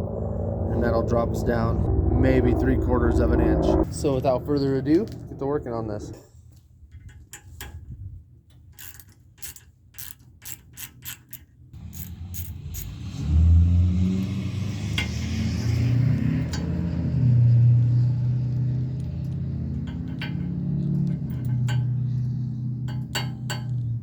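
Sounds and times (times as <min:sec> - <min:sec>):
loud low droning: 0:00.0 - 0:06.2, 0:11.8 - 0:24.0
ratchet wrench clicking: 0:08.7 - 0:13.0, 0:19.9 - 0:22.0.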